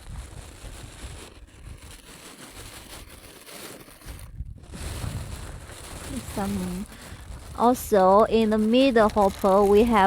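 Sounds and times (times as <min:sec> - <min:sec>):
wind buffeting microphone: 0:04.1 - 0:10.0.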